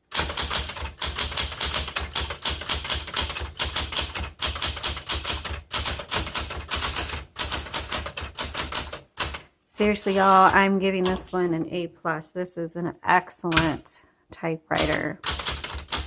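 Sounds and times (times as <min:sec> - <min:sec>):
typewriter typing: 0:00.1 - 0:11.4, 0:14.7 - 0:16.0.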